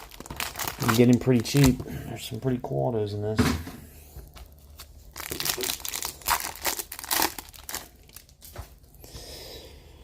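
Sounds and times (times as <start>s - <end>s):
plastic wrapper tearing and crinkling: 0.0s - 1.8s, 4.3s - 8.8s.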